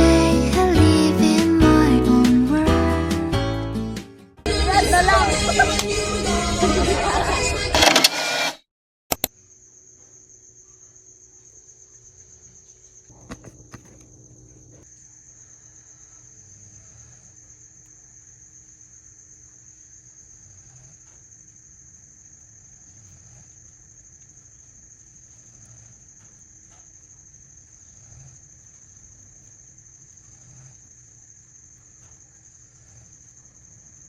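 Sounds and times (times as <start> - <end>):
insects chirring: 9.2 - 34.0.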